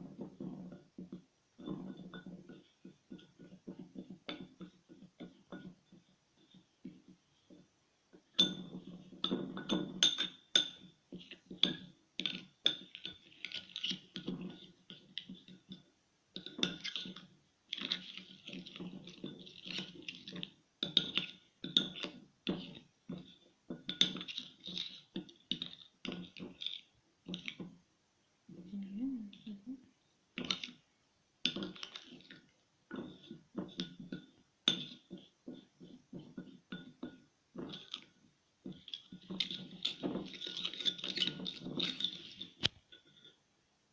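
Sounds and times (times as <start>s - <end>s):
spoon stirring and scraping bowl: 0.0s - 27.9s, 28.5s - 43.4s.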